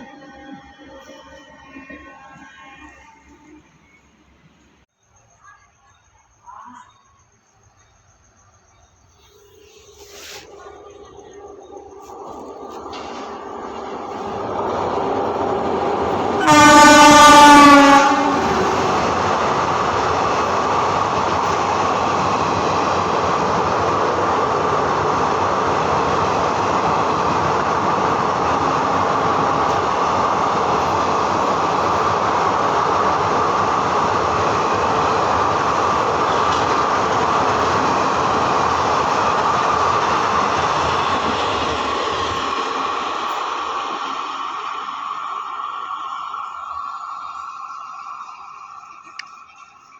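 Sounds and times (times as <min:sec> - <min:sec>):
train wheels rushing on rails: 0:09.2 - 0:49.9
locomotive horn blast: 0:16.3 - 0:19.1.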